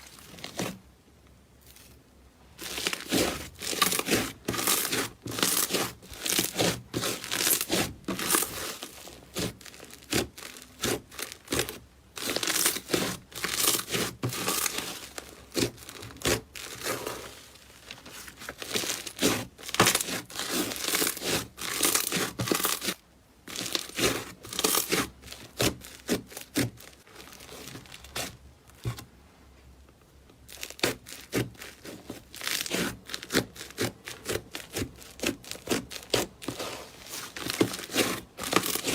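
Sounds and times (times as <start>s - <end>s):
slime crackling and popping: 2.6s - 28.9s.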